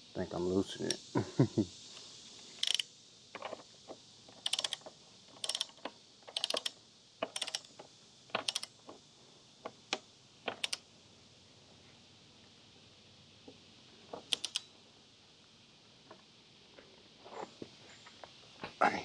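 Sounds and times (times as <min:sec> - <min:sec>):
torque wrench ratchet clicks: 0:02.5 - 0:03.6, 0:04.3 - 0:08.8, 0:09.9 - 0:10.8, 0:14.3 - 0:14.7.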